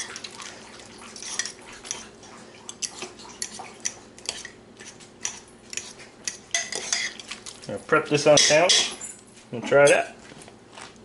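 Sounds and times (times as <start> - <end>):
forks clinking in pot: 5.2 - 7.4, 8.3 - 9.2.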